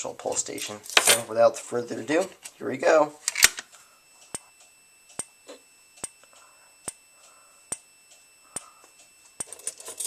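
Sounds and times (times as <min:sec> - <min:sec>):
faint high whine: 0:00.0 - 0:10.0
strobe clicking: 0:03.3 - 0:09.5.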